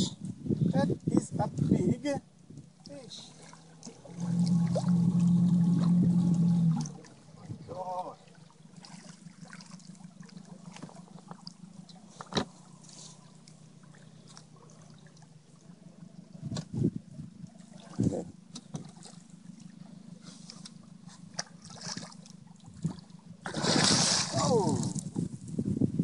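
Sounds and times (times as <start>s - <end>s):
water trickling and sloshing: 1.0s - 25.6s
steady low hum: 2.2s - 26.0s
splashes or thumps: 22.8s - 25.2s.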